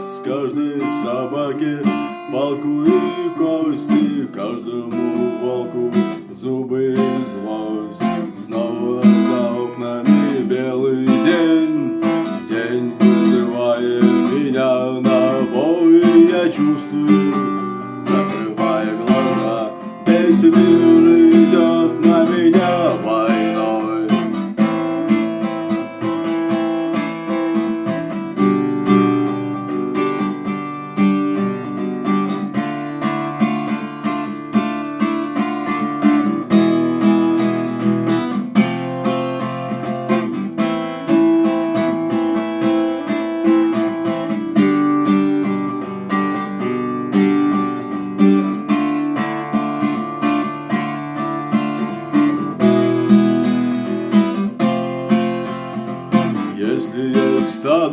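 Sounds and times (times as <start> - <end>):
acoustic guitar strumming: 0.0 - 57.9.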